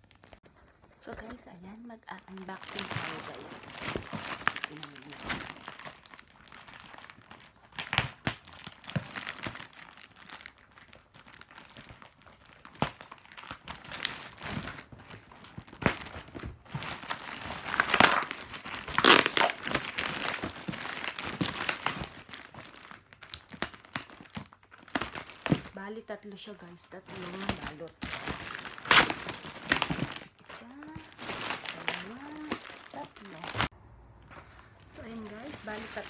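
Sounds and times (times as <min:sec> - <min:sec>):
packaging crinkling and tearing: 0:00.0 - 0:33.8, 0:34.8 - 0:36.0.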